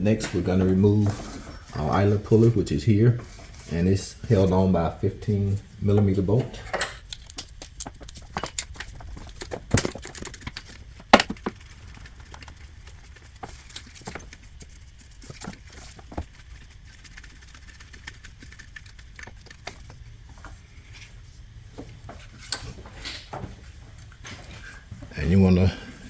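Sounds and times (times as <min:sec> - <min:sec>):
hand tools clicking and knocking: 0:07.0 - 0:11.6.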